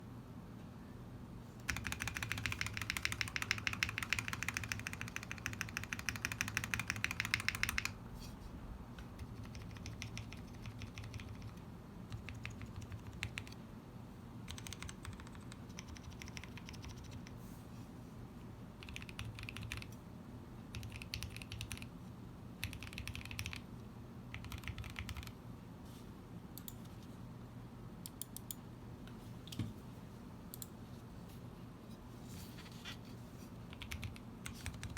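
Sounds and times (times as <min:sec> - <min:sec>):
typing on mechanical keyboard: 0:01.6 - 0:08.0, 0:09.0 - 0:13.6, 0:14.5 - 0:17.3, 0:18.8 - 0:20.0, 0:20.7 - 0:21.9, 0:22.6 - 0:23.6, 0:24.3 - 0:25.4, 0:33.7 - 0:34.9.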